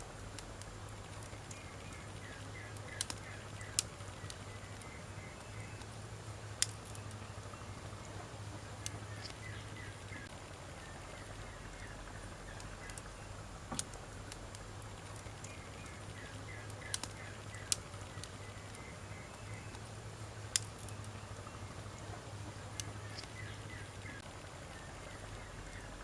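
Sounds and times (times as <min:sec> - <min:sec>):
steady low hum: 0:00.0 - 0:26.0
wood fire crackling: 0:00.0 - 0:26.0
sharp pops of fire: 0:00.2 - 0:07.2, 0:11.7 - 0:21.0.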